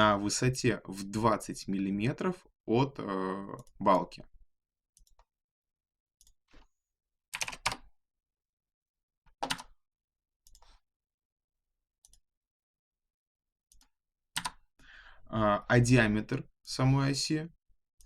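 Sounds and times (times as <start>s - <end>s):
computer keystrokes: 7.3s - 7.9s, 9.3s - 9.8s, 13.7s - 14.6s.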